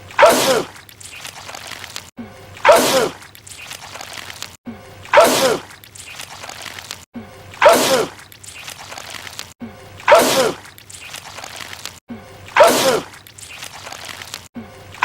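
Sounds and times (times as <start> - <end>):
man sneezing loudly: 10.1 - 10.6, 12.6 - 13.1.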